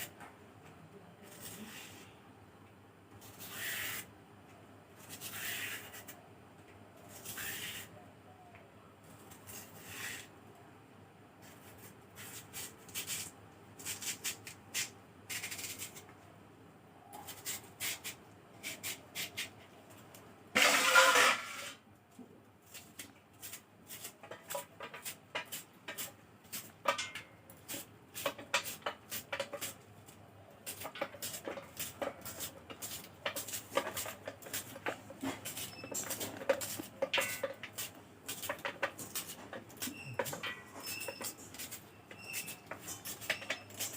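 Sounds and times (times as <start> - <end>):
blade cutting through taro: 5.1 - 6.2.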